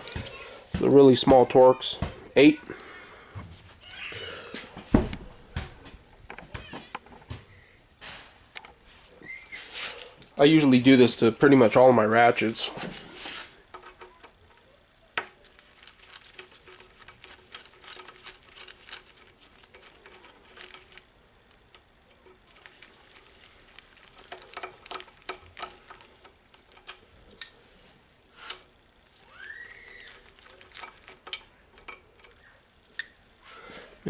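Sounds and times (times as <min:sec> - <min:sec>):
metallic clicks of hand tools: 0:30.3 - 0:33.2.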